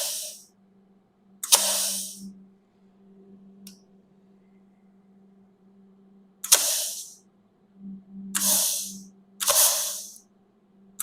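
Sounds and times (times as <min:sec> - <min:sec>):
hissing blast of air: 0:00.0 - 0:00.4, 0:01.4 - 0:02.2, 0:06.4 - 0:07.2, 0:08.4 - 0:10.2
plasma cutter click: 0:00.0 - 0:00.4, 0:01.4 - 0:02.2, 0:06.4 - 0:07.2, 0:08.4 - 0:10.2
faint steady hum: 0:00.0 - 0:11.0.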